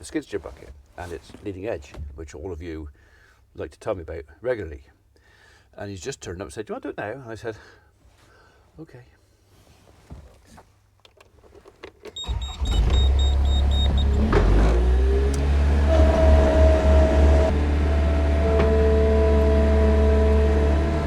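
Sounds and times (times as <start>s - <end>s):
short high beeps: 12.2s - 14.2s
hydraulic whine: 12.2s - 21.0s
loader engine running: 12.2s - 21.0s.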